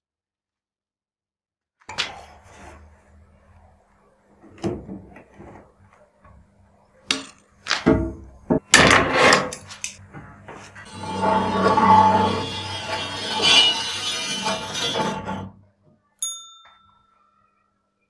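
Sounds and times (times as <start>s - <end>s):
wood scraping against wood: 10.5s - 15.5s.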